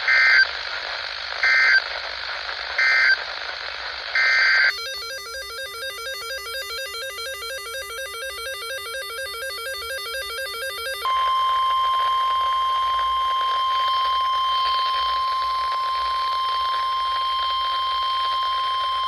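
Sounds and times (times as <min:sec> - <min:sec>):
steady high-pitched alarm tone: 0:04.7 - 0:19.0.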